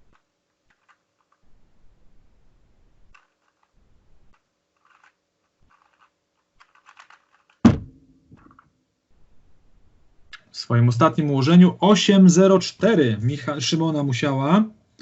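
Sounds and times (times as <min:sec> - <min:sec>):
puzzle cube turning clicks: 0:00.0 - 0:01.6, 0:03.0 - 0:07.6.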